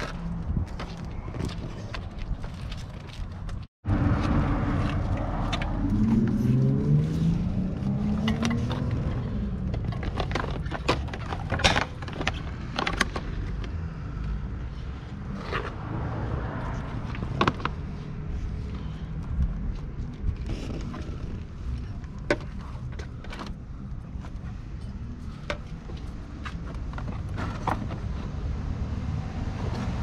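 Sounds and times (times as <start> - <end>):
car engine accelerating: 3.8 - 9.7.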